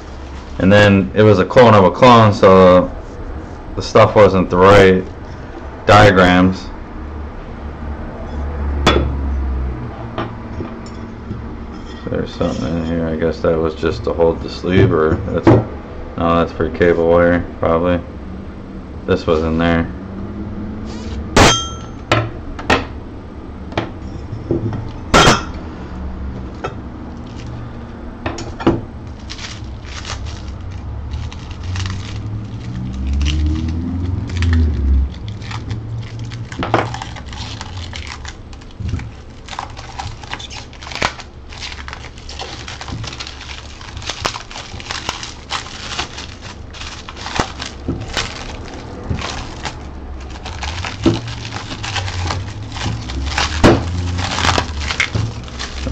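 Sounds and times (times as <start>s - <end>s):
packing material crackling: 29.1s - 55.9s.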